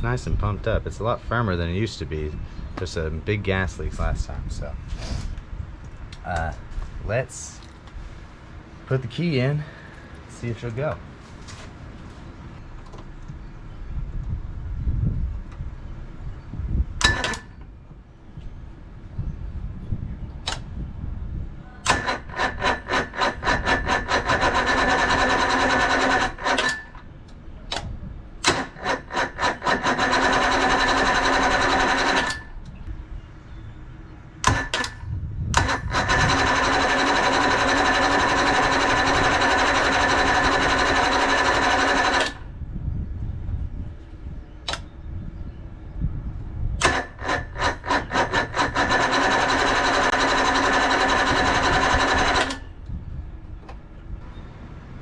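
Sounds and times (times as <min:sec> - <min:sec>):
sharp clicks: 0:20.4 - 0:20.7, 0:44.6 - 0:44.9
electric starter cranking outboard engine: 0:21.8 - 0:26.9, 0:28.4 - 0:32.5, 0:34.5 - 0:35.0, 0:35.6 - 0:42.5, 0:46.8 - 0:52.8.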